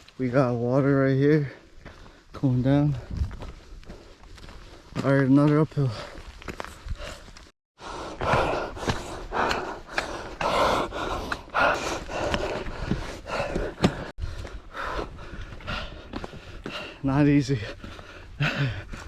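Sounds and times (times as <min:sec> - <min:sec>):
light footsteps: 0:01.4 - 0:07.5, 0:08.2 - 0:19.0
person breathing hard: 0:03.5 - 0:04.9, 0:05.9 - 0:17.0, 0:17.6 - 0:19.0.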